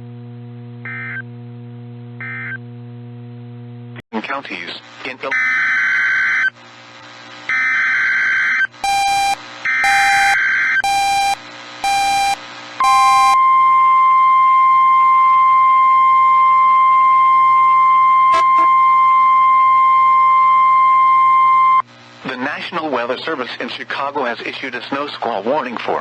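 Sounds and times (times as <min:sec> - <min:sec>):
digital data bursts: 0:07.5 - 0:13.4
steady warning alarm tone: 0:07.5 - 0:21.8
short beeps: 0:08.8 - 0:21.8.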